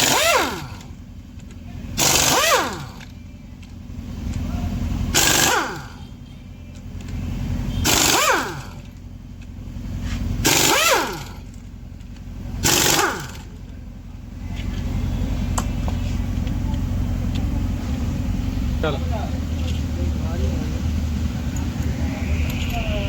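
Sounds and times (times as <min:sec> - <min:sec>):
pneumatic impact wrench bursts: 0:00.0 - 0:00.9, 0:02.0 - 0:03.1, 0:05.1 - 0:06.0, 0:07.8 - 0:08.9, 0:10.4 - 0:11.5, 0:12.6 - 0:13.6
steady low hum: 0:13.2 - 0:23.0.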